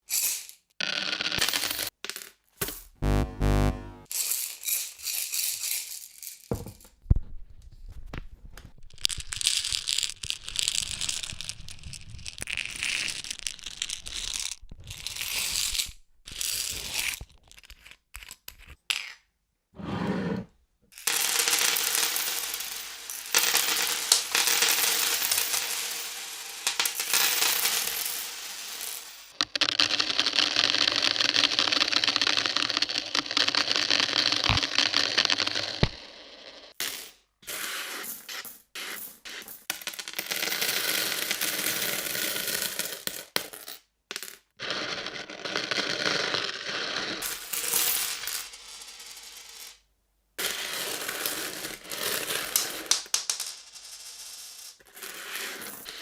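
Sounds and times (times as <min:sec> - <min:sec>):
coins rattling in a bottle: 0:00.1 - 0:02.2, 0:04.1 - 0:06.8, 0:21.0 - 0:35.6, 0:47.2 - 0:49.6, 0:50.4 - 0:56.0.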